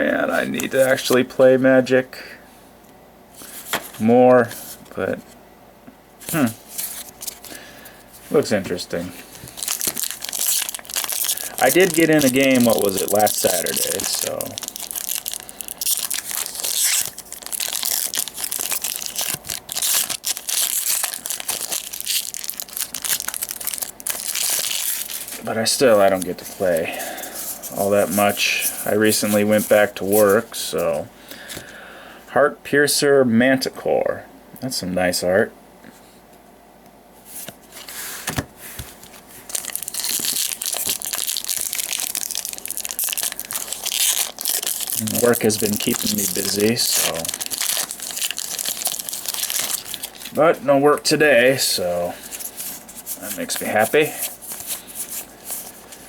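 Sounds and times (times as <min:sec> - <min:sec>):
trading cards handled: 0:03.4 - 0:04.8, 0:06.2 - 0:31.6, 0:37.4 - 0:50.4, 0:52.1 - 0:56.0
plastic wrapper crinkling: 0:08.4 - 0:31.0, 0:38.9 - 0:56.0.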